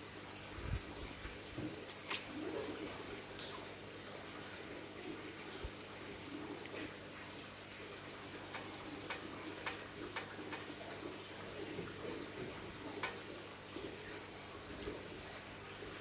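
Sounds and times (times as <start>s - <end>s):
person chewing: 1.9s - 2.3s
wet mouth clicks and smacks: 1.9s - 2.3s.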